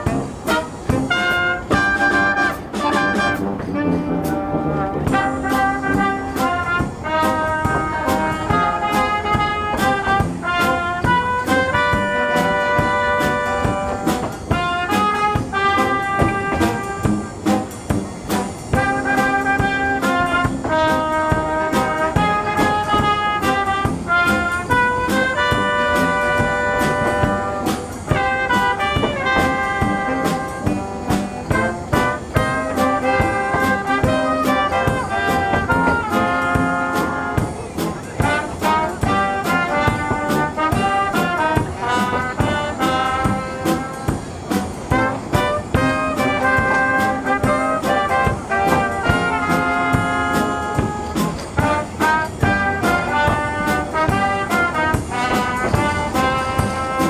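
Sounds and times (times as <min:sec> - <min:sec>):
brass band playing: 0:00.0 - 0:57.0.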